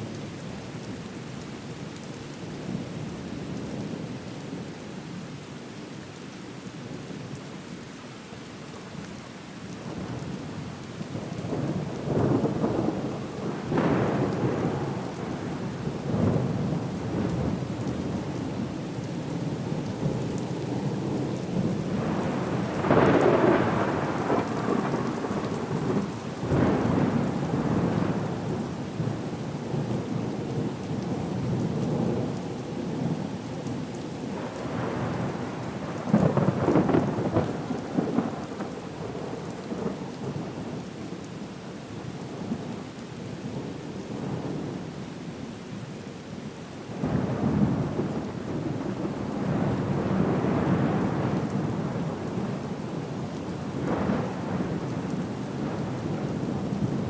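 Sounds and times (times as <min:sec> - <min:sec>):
heavy rain hiss: 0:20.8 - 0:41.1
thunder rumbling: 0:21.6 - 0:29.2, 0:34.4 - 0:39.9.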